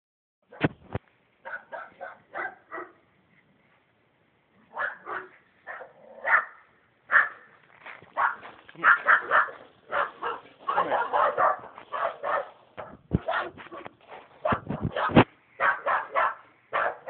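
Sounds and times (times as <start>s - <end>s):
small dog barking: 1.4s - 3.0s, 4.7s - 7.5s, 8.2s - 17.0s.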